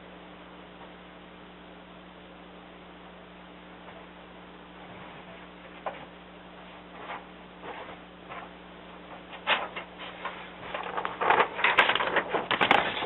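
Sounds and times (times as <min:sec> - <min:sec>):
faint steady hum: 0:00.0 - 0:13.0
paper rustling: 0:06.9 - 0:13.0.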